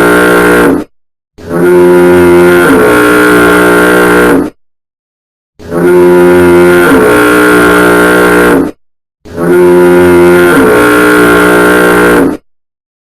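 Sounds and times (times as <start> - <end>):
loud distorted foghorn blasts: 0.0 - 4.6, 5.6 - 12.4.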